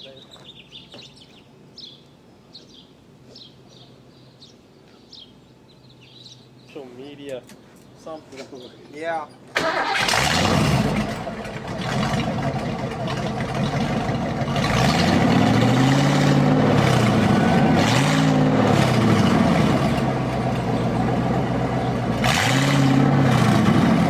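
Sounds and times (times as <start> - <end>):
car engine revving: 9.6 - 24.0.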